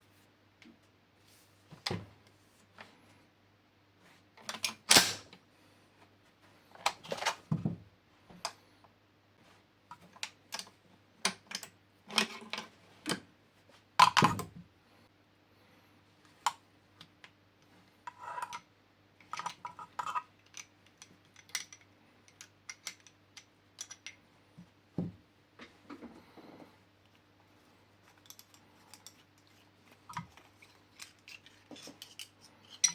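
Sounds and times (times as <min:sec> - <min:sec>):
metal rifle parts clicking and clacking: 0:19.2 - 0:24.2, 0:28.1 - 0:32.9.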